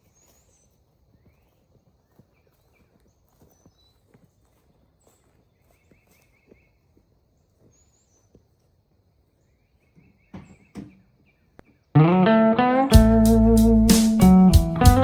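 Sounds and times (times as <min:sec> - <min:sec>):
faint birdsong: 0:00.0 - 0:15.0.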